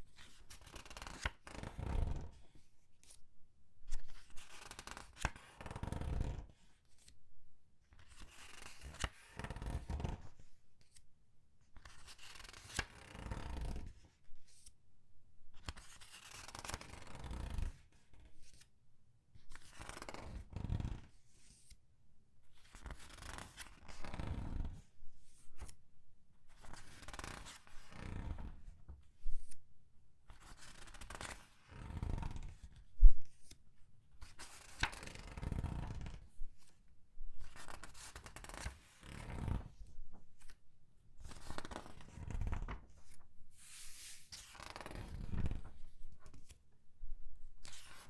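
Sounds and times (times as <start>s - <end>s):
paper pages turning and rustling: 30.4s - 33.6s, 34.2s - 36.8s, 37.4s - 40.6s, 41.2s - 46.6s, 47.6s - 48.0s.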